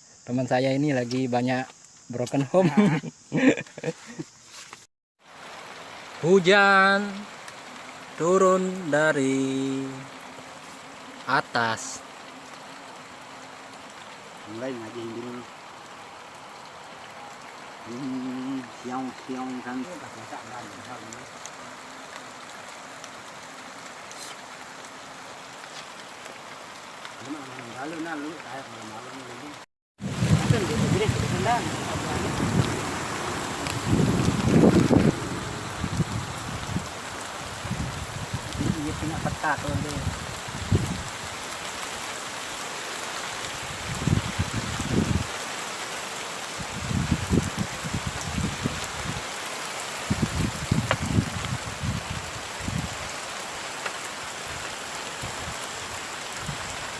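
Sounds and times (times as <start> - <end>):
heavy rain falling: 2.4 - 4.2, 5.2 - 56.9
wind buffeting microphone: 30.0 - 41.3, 43.7 - 45.3, 46.6 - 49.2, 50.1 - 53.1.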